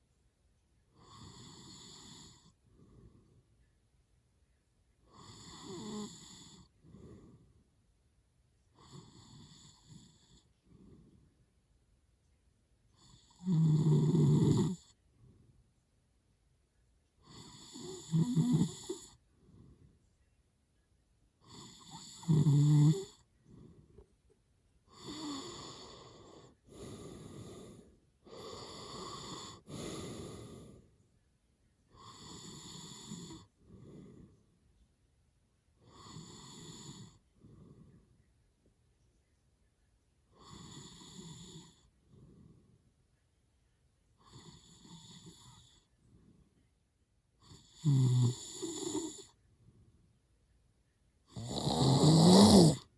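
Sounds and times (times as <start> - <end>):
man snoring: 1.0 - 2.5, 5.1 - 6.7, 13.1 - 14.9, 17.3 - 19.1, 21.5 - 23.2, 24.9 - 30.7, 47.5 - 49.3, 51.3 - 52.9.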